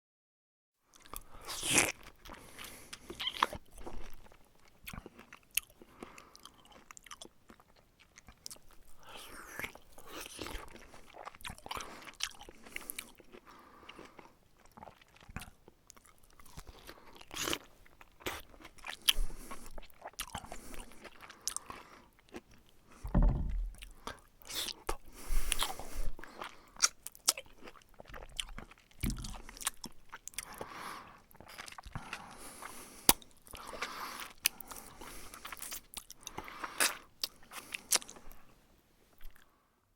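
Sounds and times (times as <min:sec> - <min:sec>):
person chewing and crunching: 0:00.9 - 0:38.5, 0:39.1 - 0:39.5
person slurping: 0:23.1 - 0:26.6.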